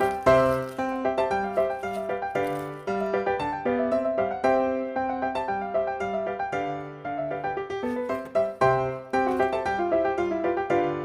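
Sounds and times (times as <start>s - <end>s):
upbeat piano music: 0.0s - 11.0s.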